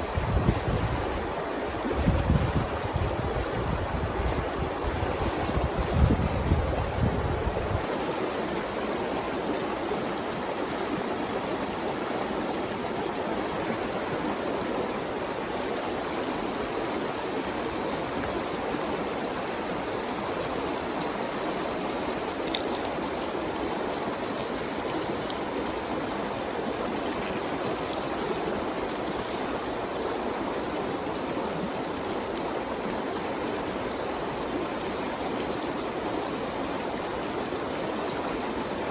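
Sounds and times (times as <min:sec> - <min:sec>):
wind rumble on microphone: 0:00.0 - 0:07.9
river water running: 0:00.0 - 0:38.9.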